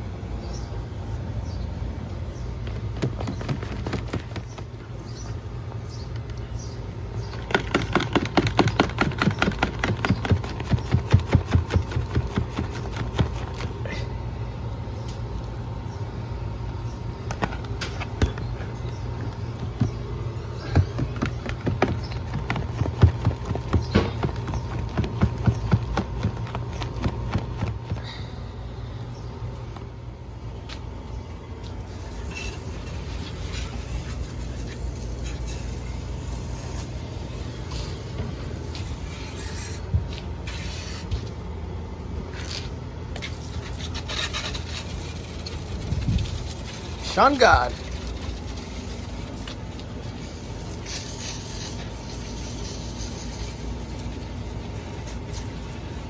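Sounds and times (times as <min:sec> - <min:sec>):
steady low hum: 0:00.0 - 0:56.0
filters knocking in a tub: 0:07.4 - 0:13.4, 0:19.3 - 0:28.1.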